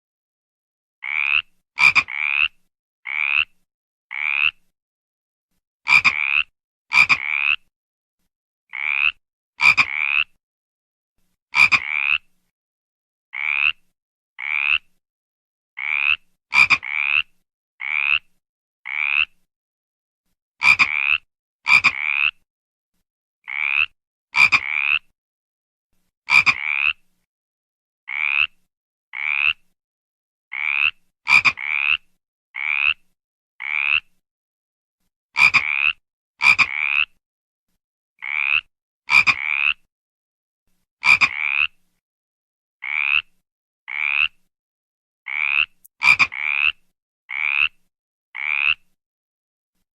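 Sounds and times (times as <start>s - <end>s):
frog croaking: 1.0s - 4.6s, 5.9s - 7.6s, 8.7s - 10.3s, 11.6s - 12.3s, 13.4s - 13.8s, 14.4s - 14.9s, 15.8s - 18.3s, 18.9s - 19.4s, 20.6s - 22.4s, 23.5s - 25.1s, 26.3s - 27.0s, 28.1s - 28.6s, 29.2s - 29.6s, 30.5s - 33.0s, 33.6s - 34.0s, 35.4s - 37.1s, 38.2s - 39.8s, 41.0s - 41.7s, 42.8s - 43.3s, 43.9s - 44.4s, 45.3s - 47.8s, 48.4s - 48.8s.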